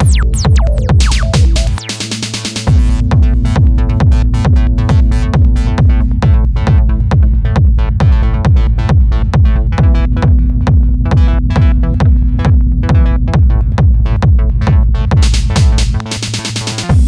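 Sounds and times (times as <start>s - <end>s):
clicky percussion: 0.0s - 3.0s
sustained synth chords: 0.0s - 14.3s
fast kick drum: 0.0s - 17.0s.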